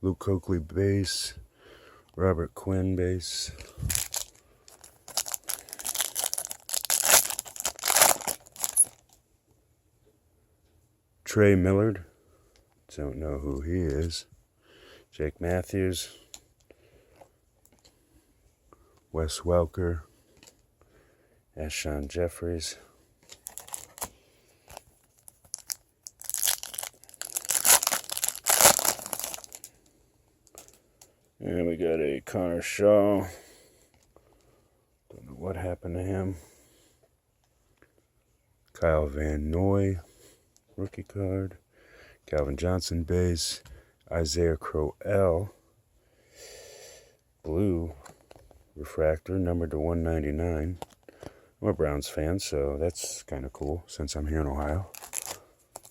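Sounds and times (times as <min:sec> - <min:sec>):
foil wrapper crinkling and tearing: 0:03.7 - 0:09.1, 0:23.4 - 0:24.1, 0:24.7 - 0:29.7, 0:54.9 - 0:55.9.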